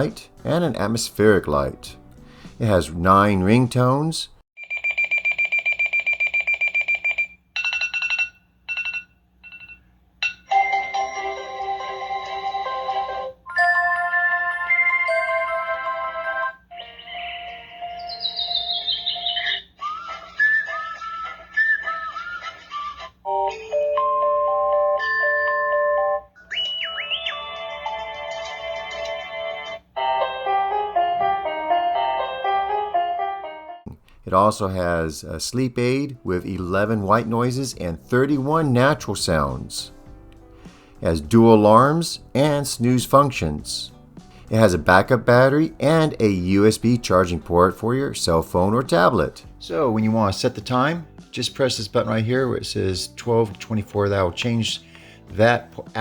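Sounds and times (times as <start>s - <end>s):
melodic ringtone: 10.5s - 33.6s
higher electronic beeps: 26.4s - 27.6s.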